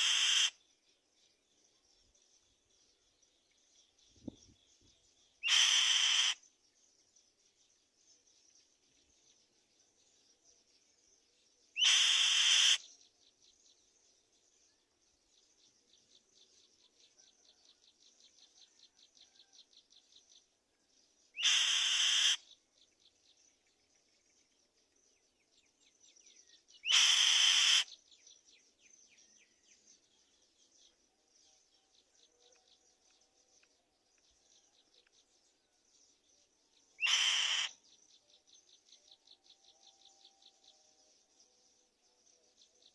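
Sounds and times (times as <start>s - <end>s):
bird harsh screeches: 0.0s - 0.5s, 5.4s - 6.4s, 11.8s - 12.8s, 21.4s - 22.4s, 26.9s - 27.9s, 37.0s - 37.7s.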